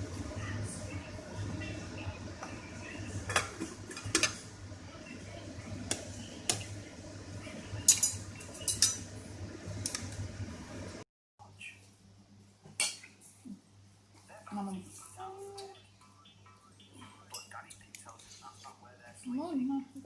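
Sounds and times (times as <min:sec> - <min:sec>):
steady low hum: 0:00.0 - 0:20.0
metal utensils clinking on dishes: 0:07.9 - 0:09.1.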